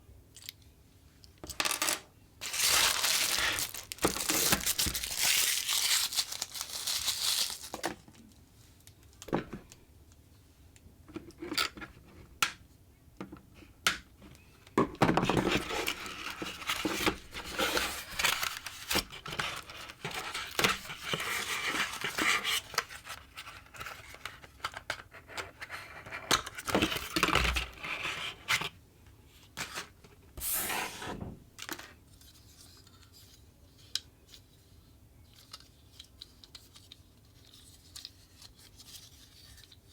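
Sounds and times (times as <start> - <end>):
packaging tearing and crinkling: 2.4 - 8.0, 15.4 - 23.6.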